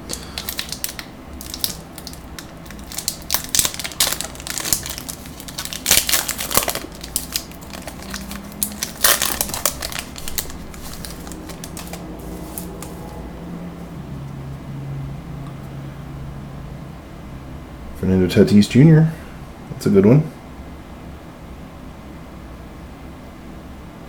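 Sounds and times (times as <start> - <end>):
wrapper tearing and crinkling: 0.0 - 13.1.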